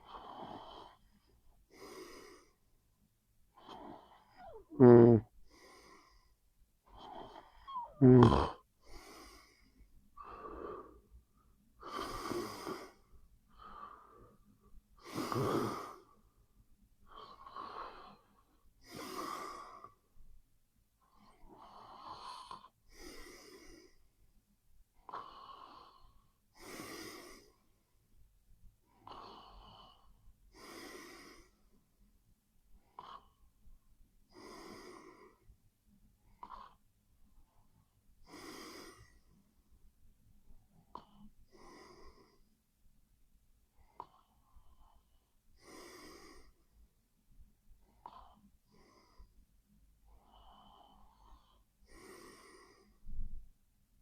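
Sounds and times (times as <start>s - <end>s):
person snoring: 3.7s - 5.3s, 7.0s - 8.6s.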